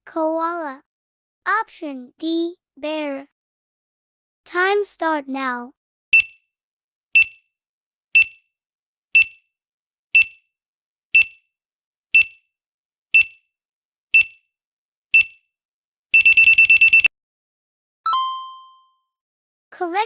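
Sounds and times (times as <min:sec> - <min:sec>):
short high electronic beeps: 0:16.2 - 0:17.1.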